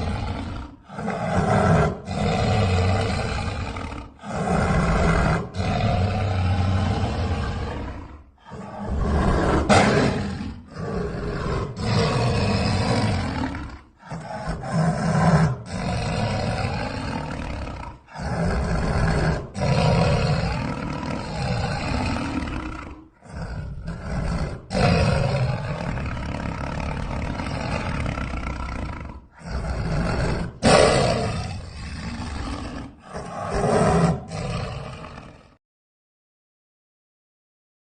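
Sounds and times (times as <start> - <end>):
deep monster cat growls: 0.0 - 35.6.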